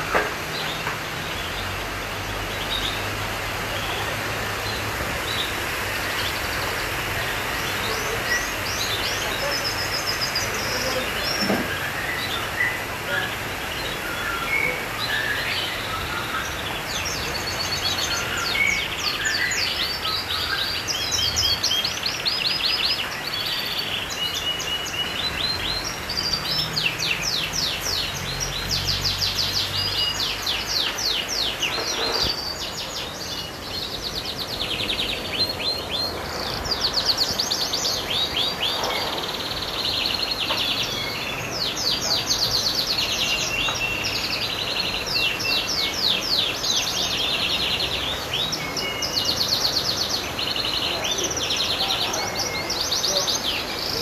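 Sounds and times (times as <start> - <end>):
canary singing trills: 2.5 - 54.0.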